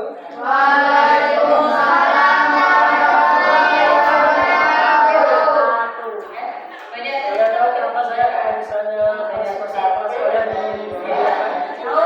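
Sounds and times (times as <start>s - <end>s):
children singing in unison: 0.3s - 5.9s, 10.2s - 12.0s.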